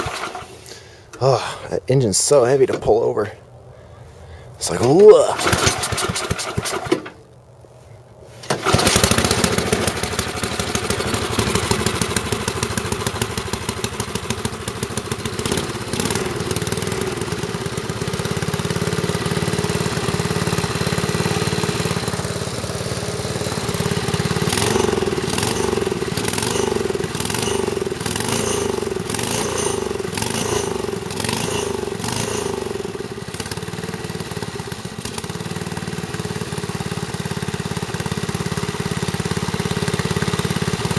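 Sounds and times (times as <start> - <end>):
pull-start engine running: 0.0 - 1.3, 4.7 - 7.2, 8.4 - 40.9
gasoline engine running: 0.0 - 1.5, 8.4 - 40.9.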